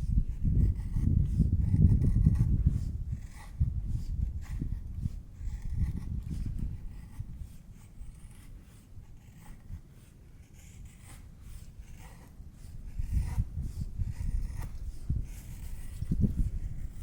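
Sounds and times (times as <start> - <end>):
low rumbling: 0.3 - 7.1.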